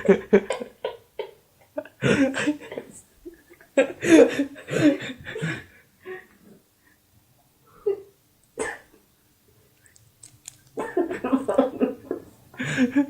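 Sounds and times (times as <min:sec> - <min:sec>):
person coughing: 0:08.6 - 0:09.0.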